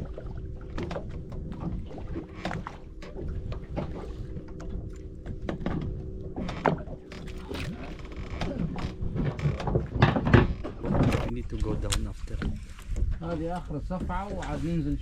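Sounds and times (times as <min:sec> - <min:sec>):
boat engine idling: 0:00.0 - 0:11.4.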